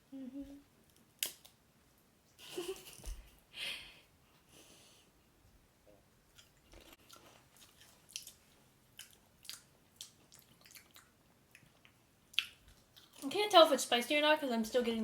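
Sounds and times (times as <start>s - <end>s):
potato chips being chewed: 6.3s - 13.3s.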